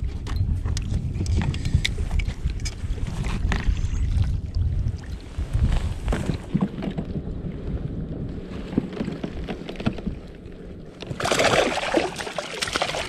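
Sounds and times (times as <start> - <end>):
wind on microphone: 0.0 - 13.0
water splashing: 11.0 - 13.0.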